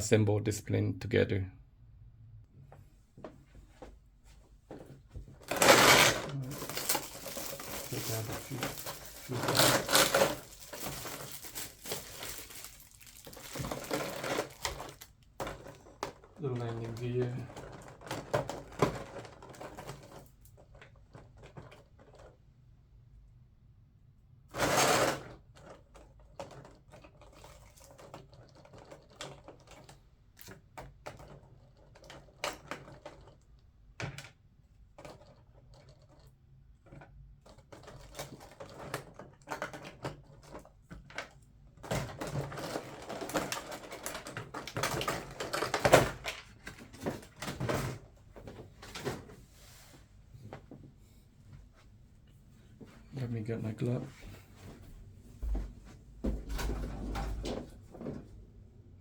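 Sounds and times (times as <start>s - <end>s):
packaging rustling: 5.4s - 15.8s, 42.3s - 47.7s.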